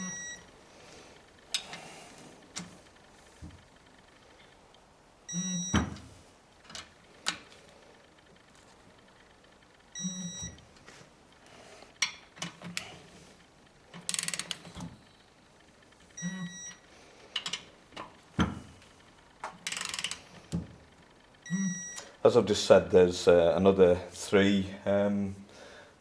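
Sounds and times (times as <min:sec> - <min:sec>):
torque wrench beeping: 0:00.0 - 0:00.5, 0:05.3 - 0:05.9, 0:09.9 - 0:10.6, 0:16.1 - 0:16.8, 0:21.3 - 0:22.2
ratchet clicks: 0:13.9 - 0:14.8, 0:19.6 - 0:20.3.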